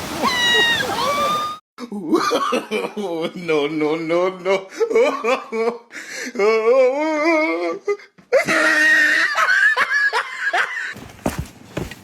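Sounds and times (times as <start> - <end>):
person laughing hard: 4.6 - 7.5, 8.3 - 11.0.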